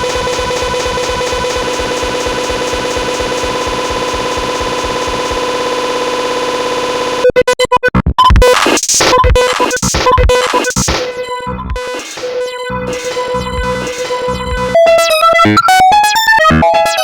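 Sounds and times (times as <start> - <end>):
buzzing pulsing electronic tone: 0.0 - 7.3
stuttering electronic bursts: 0.0 - 7.3, 12.8 - 15.3
harsh electronic music: 0.0 - 17.0.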